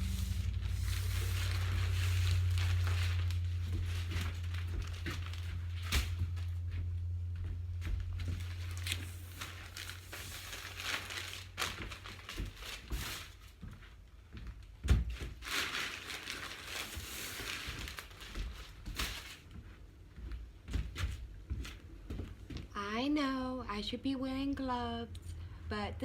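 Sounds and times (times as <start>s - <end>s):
low hum: 0.0s - 10.8s, 22.7s - 26.0s
insulation rustling and tearing: 0.0s - 14.0s, 14.8s - 19.8s.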